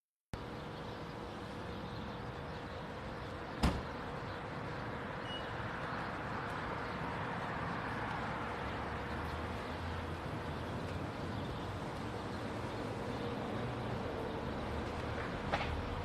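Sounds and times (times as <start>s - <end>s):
outdoor street noise: 0.4s - 16.0s
sharp knock: 3.6s - 3.9s.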